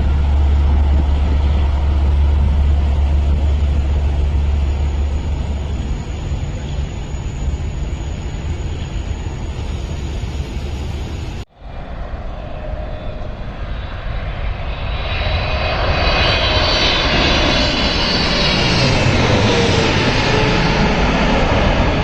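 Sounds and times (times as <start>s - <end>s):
low tone falling in pitch: 0.0s - 7.8s
high engine whine: 0.0s - 22.0s
jet airliner engines rushing: 0.0s - 22.0s.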